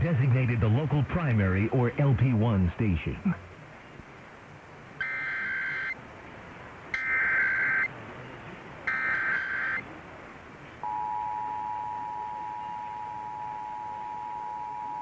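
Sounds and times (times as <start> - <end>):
two-tone attention signal: 5.0 - 6.0, 7.0 - 7.9, 8.9 - 9.8, 10.8 - 15.0.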